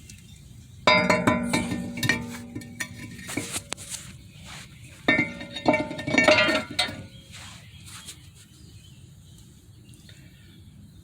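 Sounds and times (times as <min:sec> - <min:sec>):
metal brake rotor clanking: 0:00.9 - 0:04.4, 0:05.0 - 0:07.4.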